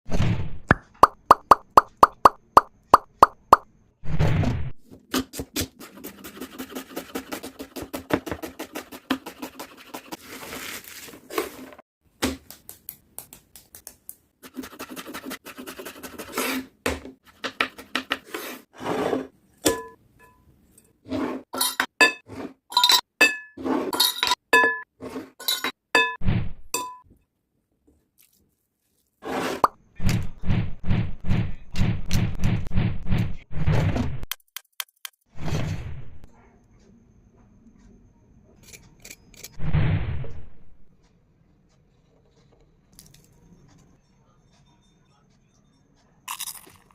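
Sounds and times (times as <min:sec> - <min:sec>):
utensils and dishes clinking: 0:19.7 - 0:26.2.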